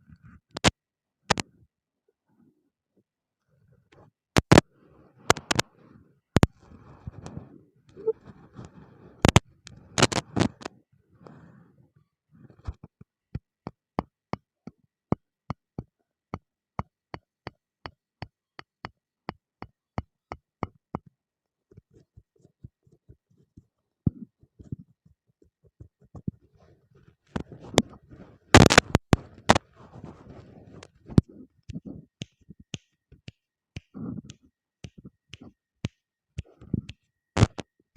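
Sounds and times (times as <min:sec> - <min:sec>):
sharp clicks and light taps: 0:04.4 - 0:04.6, 0:28.6 - 0:29.6, 0:31.1 - 0:37.7.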